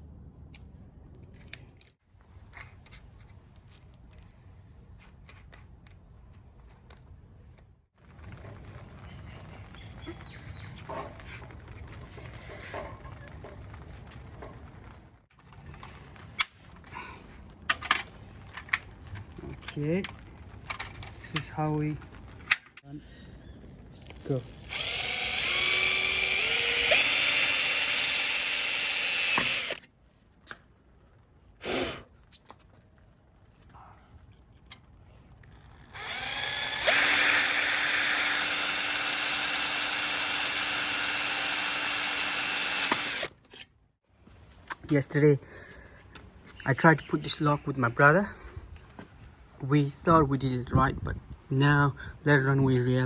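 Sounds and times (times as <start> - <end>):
power tool whining: 24.0 - 29.8, 35.6 - 43.3.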